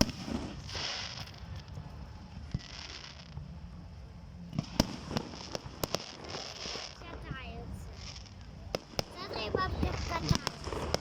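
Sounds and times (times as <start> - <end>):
firework bangs and pops: 0.0 - 1.9, 4.5 - 11.0
firework crackling hiss: 0.0 - 11.0.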